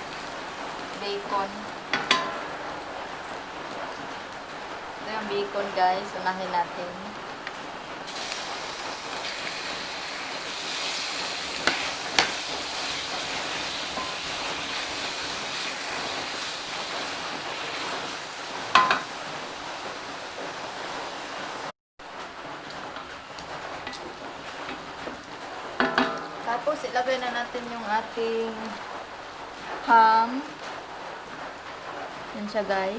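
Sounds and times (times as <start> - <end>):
bacon sizzling in a frying pan: 0.0 - 21.7, 22.5 - 32.9
utensil clinking against pan: 1.9 - 2.5, 13.9 - 14.6, 18.7 - 19.1, 25.8 - 26.4.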